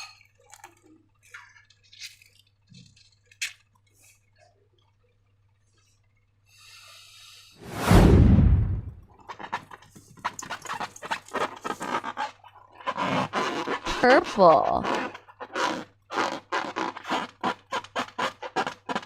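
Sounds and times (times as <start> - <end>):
air rushing from balloon: 7.6 - 9.1.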